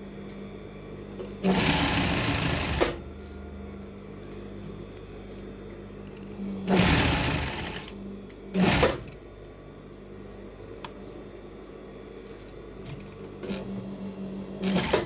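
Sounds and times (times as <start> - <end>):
sewing machine stitching: 1.4 - 3.0, 6.6 - 8.0, 8.6 - 9.1, 13.4 - 13.8, 14.6 - 15.0.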